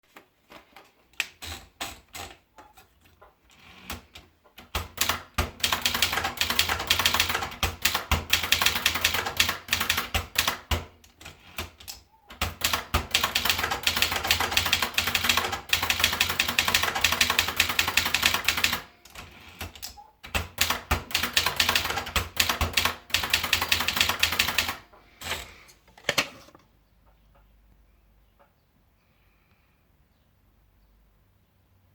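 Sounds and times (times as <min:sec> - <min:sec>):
typewriter keystrokes: 0:03.9 - 0:25.5.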